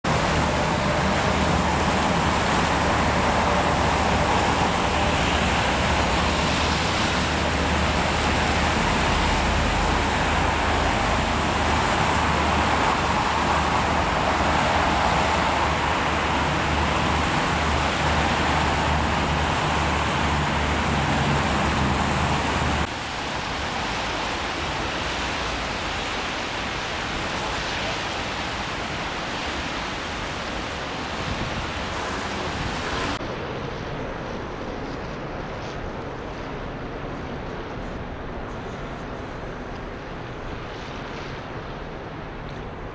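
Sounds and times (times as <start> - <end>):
street traffic: 0.0 - 33.5
wind rumble on microphone: 0.0 - 42.9.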